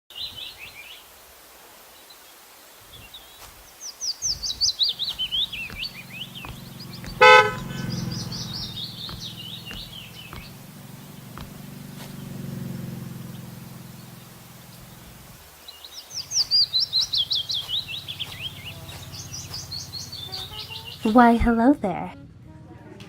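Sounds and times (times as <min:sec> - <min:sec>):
bird chirping: 0:00.1 - 0:01.2, 0:01.9 - 0:21.5
low hum of traffic: 0:00.1 - 0:23.0
car horn honk: 0:07.0 - 0:08.9.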